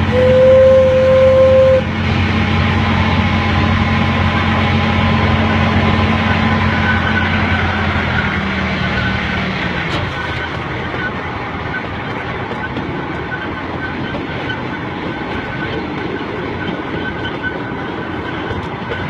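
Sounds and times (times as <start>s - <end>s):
train horn toot: 0.0s - 2.0s
train rumbling along: 0.0s - 19.0s.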